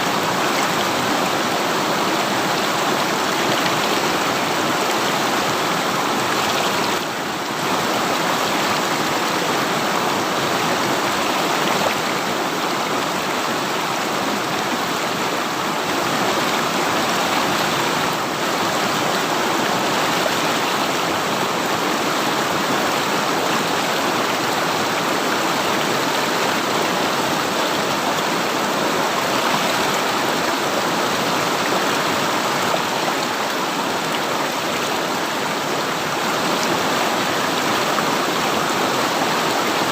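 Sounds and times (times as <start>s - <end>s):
river water rushing over rocks: 0.0s - 39.9s.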